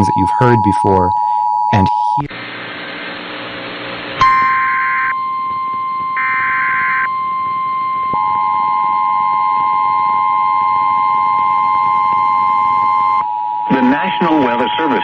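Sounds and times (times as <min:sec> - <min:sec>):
digital data bursts: 0:00.0 - 0:02.3
two-tone electronic buzz: 0:00.0 - 0:13.6.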